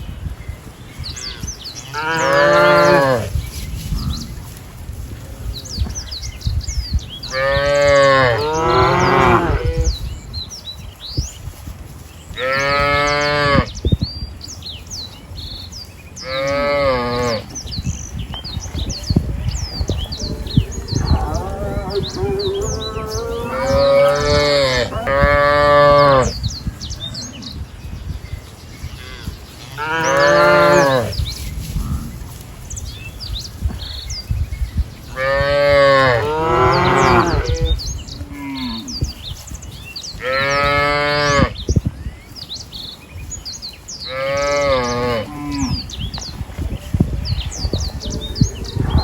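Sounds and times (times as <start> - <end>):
small birds chirping: 0.0 - 49.0
cattle mooing: 20.1 - 26.3.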